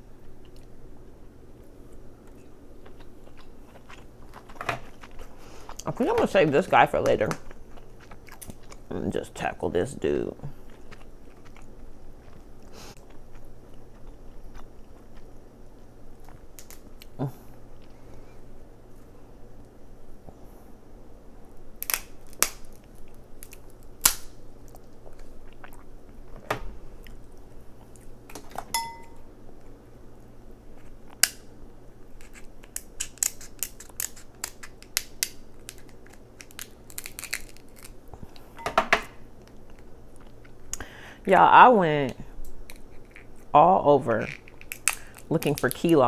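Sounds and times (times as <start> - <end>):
close-up chewing: 0.1 - 20.5, 21.5 - 31.3, 39.2 - 41.4, 42.2 - 46.0
crab shells cracking: 2.8 - 8.9, 16.2 - 17.2, 21.8 - 25.3, 31.0 - 31.6, 32.2 - 38.6, 42.4 - 43.5, 44.2 - 46.0.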